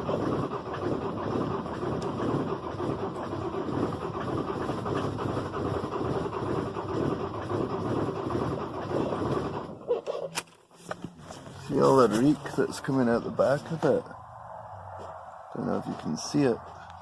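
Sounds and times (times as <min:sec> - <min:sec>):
engine cranking on starter: 0:00.0 - 0:14.1.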